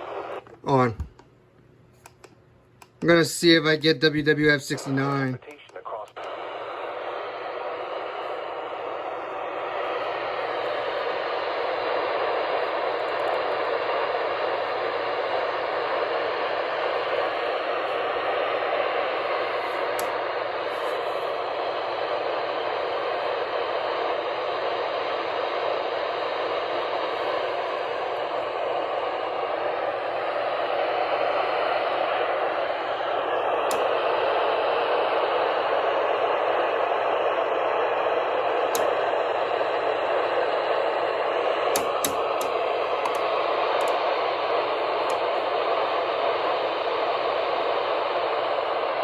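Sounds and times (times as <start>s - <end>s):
faint radio broadcast: 0.0s - 1.2s, 3.0s - 30.3s
radio static hiss: 0.0s - 1.2s, 3.0s - 49.0s.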